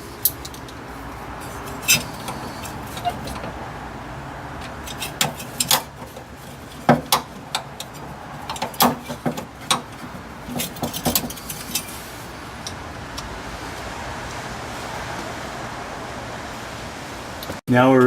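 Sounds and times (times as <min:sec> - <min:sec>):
hand tools clicking and clinking: 0:00.1 - 0:00.8, 0:01.4 - 0:03.6, 0:04.6 - 0:13.3.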